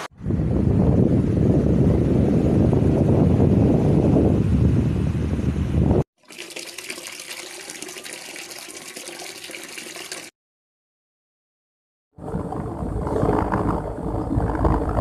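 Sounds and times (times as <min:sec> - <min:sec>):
loud low rumble: 0:00.2 - 0:06.0, 0:12.2 - 0:15.0.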